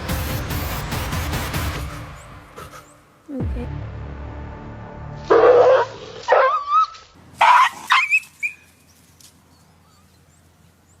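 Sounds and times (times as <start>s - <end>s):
dog yelping and whining: 5.3s - 8.6s.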